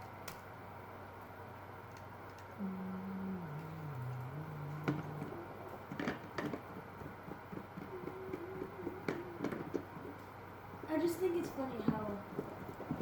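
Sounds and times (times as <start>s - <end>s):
hum stepping down in pitch: 2.6s - 5.8s.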